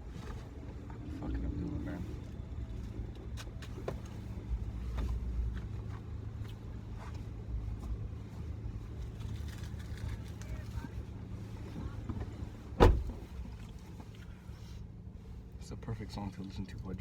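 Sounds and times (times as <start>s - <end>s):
car cabin rumble: 10.0s - 14.4s.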